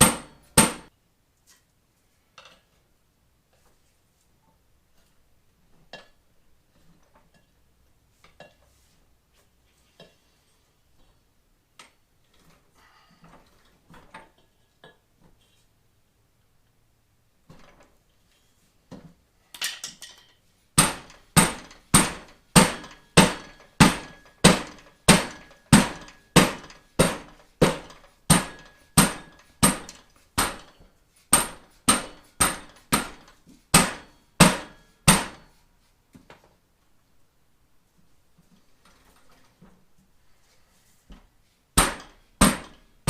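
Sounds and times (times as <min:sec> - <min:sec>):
rubber mallet beating on tire: 0:00.0 - 0:00.9, 0:20.8 - 0:35.4, 0:41.8 - 0:42.8.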